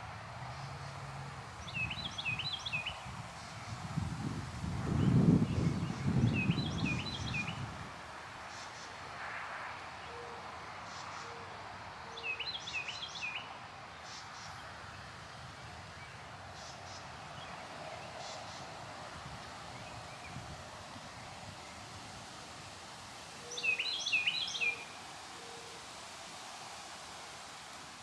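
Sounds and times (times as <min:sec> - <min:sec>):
breeze rustling trees: 0:00.0 - 0:28.0
wind rumble on microphone: 0:01.6 - 0:08.1, 0:17.2 - 0:22.9
bird chirping: 0:23.5 - 0:24.8.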